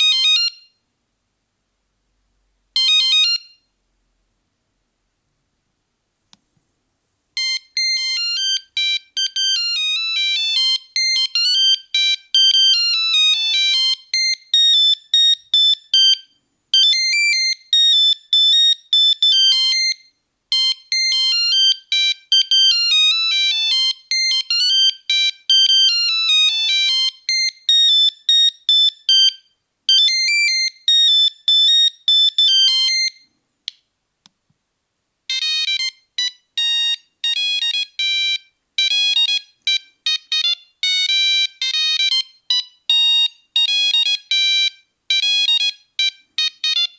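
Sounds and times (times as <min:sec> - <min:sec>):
monophonic ringtone melody: 0:07.4 - 0:33.2, 0:35.3 - 0:46.9.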